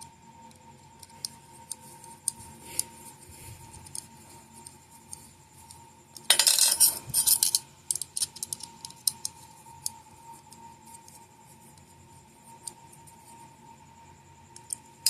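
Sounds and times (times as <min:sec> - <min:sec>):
faint high hum: 0:00.0 - 0:15.0
metal tools clattering on workbench: 0:06.3 - 0:07.6.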